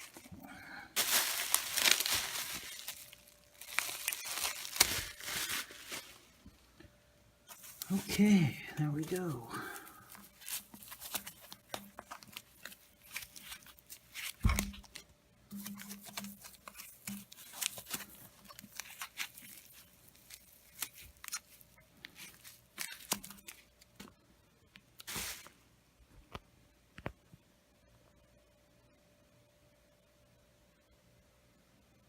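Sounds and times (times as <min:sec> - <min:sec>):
packaging rustling and tearing: 0:00.0 - 0:06.4, 0:07.5 - 0:23.9, 0:25.0 - 0:25.6.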